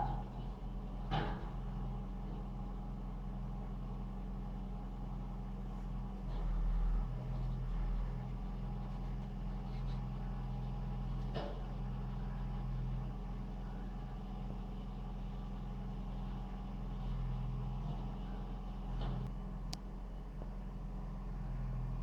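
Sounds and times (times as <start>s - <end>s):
diesel engine running: 0.0s - 1.2s.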